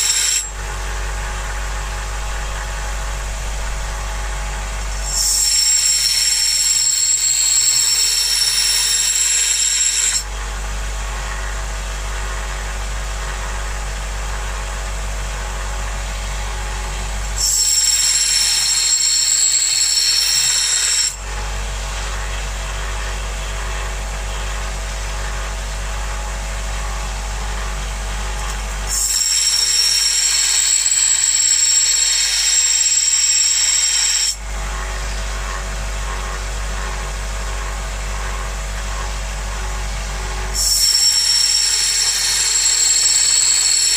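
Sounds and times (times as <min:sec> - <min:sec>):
high-pitched metal grinding: 0:00.0 - 0:00.5, 0:04.9 - 0:10.3, 0:17.3 - 0:21.2, 0:28.8 - 0:34.4, 0:40.5 - 0:43.9.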